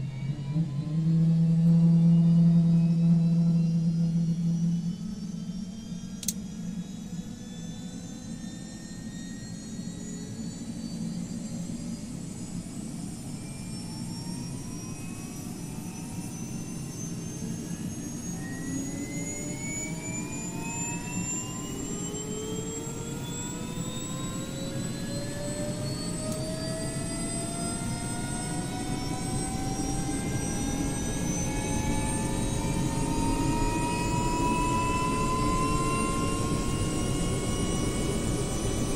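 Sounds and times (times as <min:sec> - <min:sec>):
helicopter turbine whine: 0:00.0 - 0:38.9
sharp click: 0:06.2 - 0:06.4.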